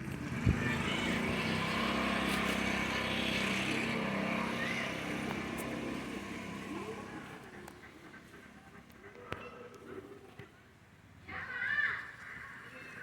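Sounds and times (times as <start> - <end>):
vehicle engine passing: 0.0 - 9.0.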